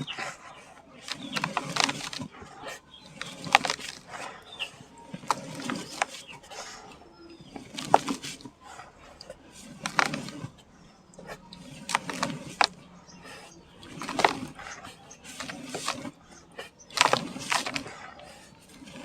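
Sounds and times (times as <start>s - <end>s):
sand and cement chunks crumbling: 9.8s - 10.5s.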